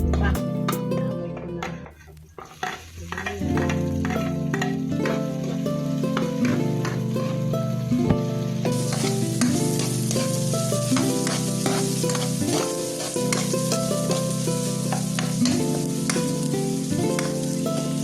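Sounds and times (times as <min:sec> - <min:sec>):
melodic background music: 0:00.0 - 0:02.0, 0:03.4 - 0:18.0
utensil clicking against pan: 0:02.4 - 0:05.2, 0:14.9 - 0:16.3
food sizzling in hot oil: 0:02.4 - 0:18.0.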